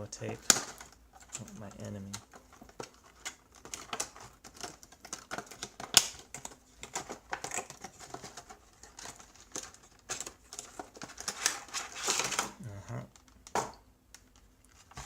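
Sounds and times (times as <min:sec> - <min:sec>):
tape peeling and tearing: 0:11.2 - 0:12.5.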